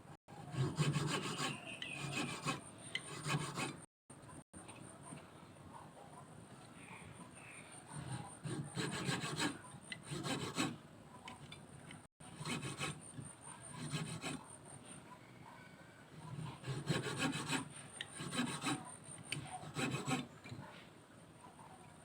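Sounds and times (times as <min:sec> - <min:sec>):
hand tool rasping across wood: 0:00.5 - 0:03.9, 0:08.0 - 0:10.8, 0:12.3 - 0:14.5, 0:16.3 - 0:20.6.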